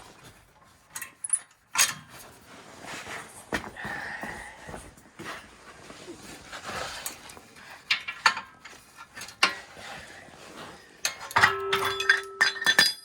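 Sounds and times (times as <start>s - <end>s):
metal parts clanking: 11.0s - 13.0s.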